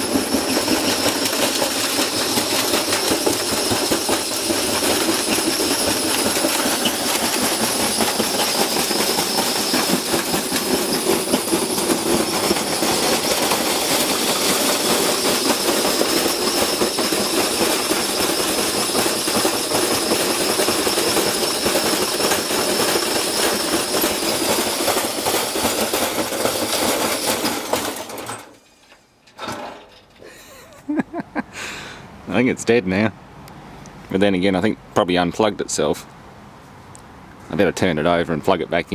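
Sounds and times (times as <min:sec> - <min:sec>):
washing machine motor whine: 0:00.0 - 0:28.5
heavy rattling and banging in drum: 0:00.0 - 0:28.6, 0:29.3 - 0:30.2.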